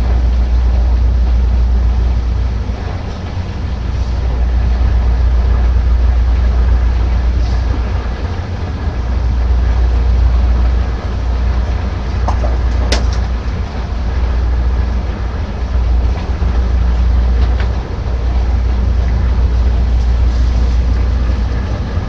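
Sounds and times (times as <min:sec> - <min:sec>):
heavy machinery rumbling: 0:00.0 - 0:22.0.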